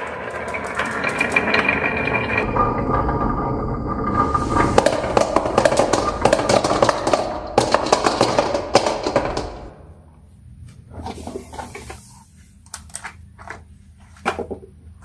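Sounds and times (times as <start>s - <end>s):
marbles clicking on track: 0.0s - 2.3s
marbles rolling down wooden run: 0.0s - 9.8s.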